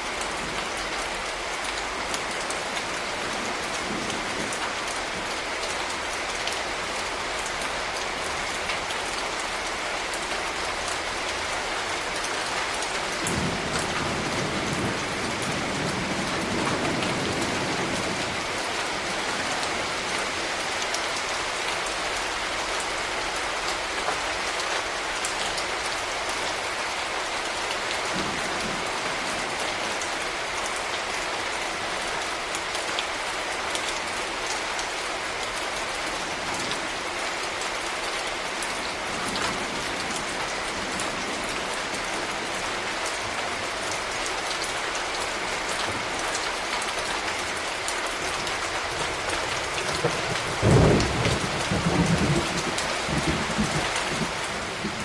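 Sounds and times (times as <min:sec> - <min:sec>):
rain falling: 0:00.0 - 0:55.0.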